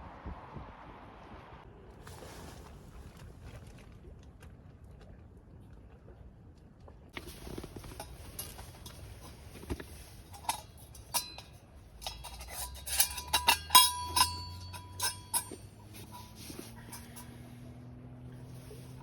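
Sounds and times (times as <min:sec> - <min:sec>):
metal cookware clinking: 0:07.8 - 0:17.6.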